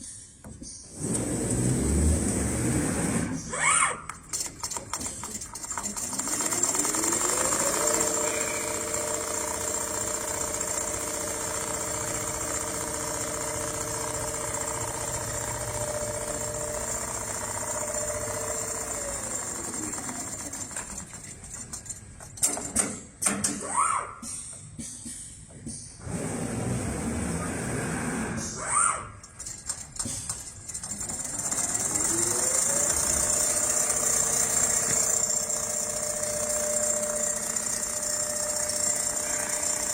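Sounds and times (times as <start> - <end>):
machine clicks: 4.0 - 23.6, 29.2 - 39.9
sewing machine running: 4.3 - 22.9, 29.2 - 39.9.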